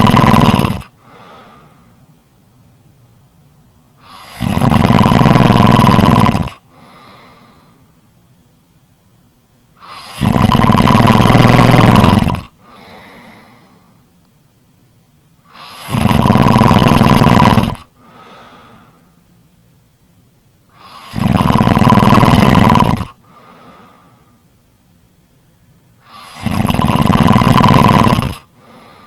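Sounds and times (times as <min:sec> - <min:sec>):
loud snoring: 0:00.0 - 0:01.0, 0:04.0 - 0:06.6, 0:09.8 - 0:12.6, 0:15.5 - 0:17.9, 0:20.7 - 0:23.2, 0:26.0 - 0:28.5
soft breath: 0:00.9 - 0:02.1, 0:06.6 - 0:08.0, 0:12.6 - 0:14.1, 0:17.9 - 0:19.3, 0:23.2 - 0:24.5, 0:28.4 - 0:29.0.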